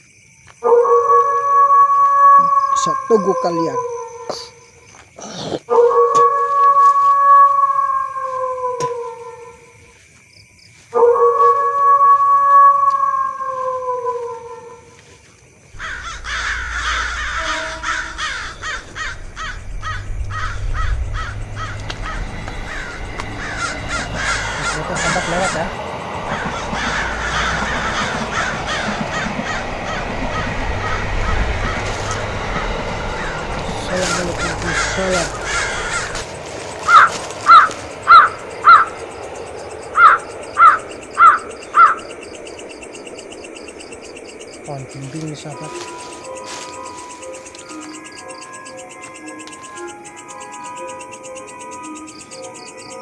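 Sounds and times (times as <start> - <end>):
insects chirring: 0.0 - 53.0
bird cawing harshly: 15.8 - 39.0, 40.0 - 42.2.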